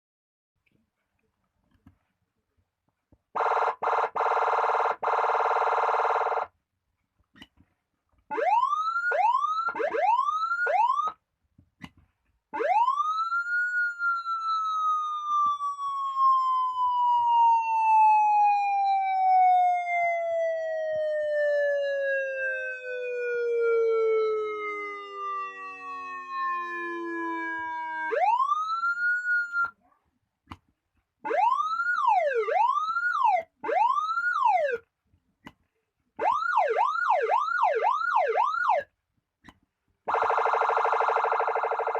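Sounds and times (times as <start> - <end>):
electronic siren sweeping and wailing: 8.3 - 11.2, 12.6 - 29.7, 31.3 - 34.8, 36.2 - 38.8, 40.1 - 41.9.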